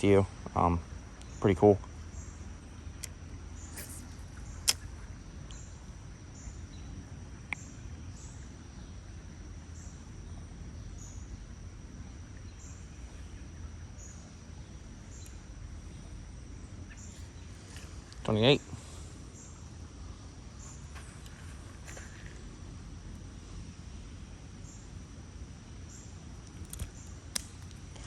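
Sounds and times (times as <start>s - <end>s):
insect chirping: 0.0s - 28.0s
sharp click: 3.8s - 4.9s, 26.4s - 27.8s.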